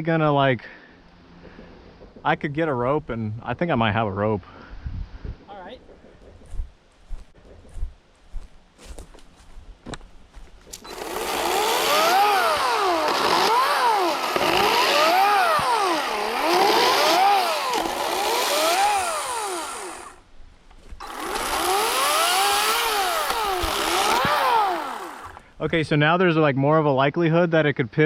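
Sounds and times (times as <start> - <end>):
chainsaw cutting wood: 10.7 - 20.2, 21.0 - 25.5.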